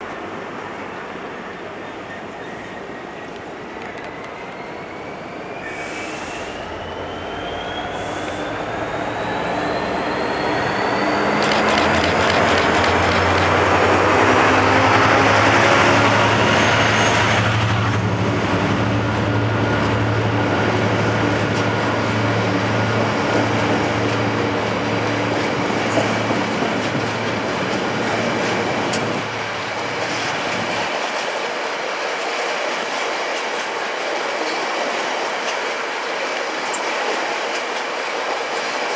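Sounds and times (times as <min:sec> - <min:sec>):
diesel locomotive engine: 0:00.0 - 0:38.9
high wheel squeal: 0:04.0 - 0:19.1
wagon wheels clickety-clack: 0:21.4 - 0:31.5.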